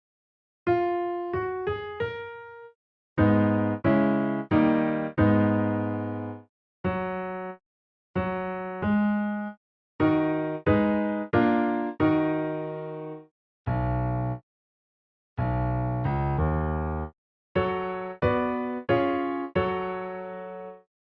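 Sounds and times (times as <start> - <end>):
electric piano chords: 0.7 - 7.6, 8.2 - 14.4, 15.4 - 20.9.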